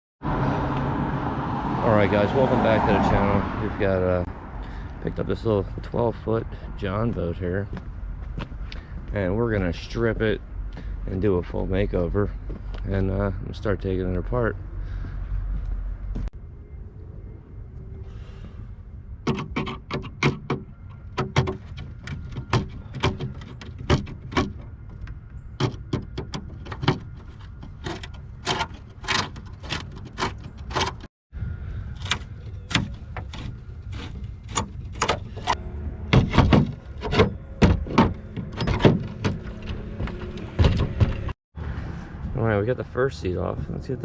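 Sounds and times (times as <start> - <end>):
metal tools clanking: 20.9 - 31.1.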